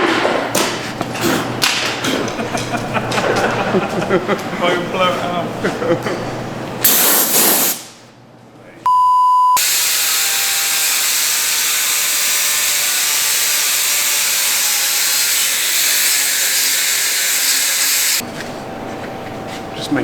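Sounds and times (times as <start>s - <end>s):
compressed air hissing: 6.8s - 8.0s, 9.6s - 18.2s.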